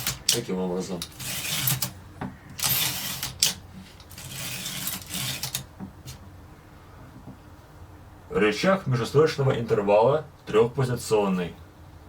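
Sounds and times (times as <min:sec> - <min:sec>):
sharp ratchet click: 0:00.0 - 0:00.4, 0:01.0 - 0:05.7
typewriter carriage sliding with rattle: 0:00.0 - 0:05.7.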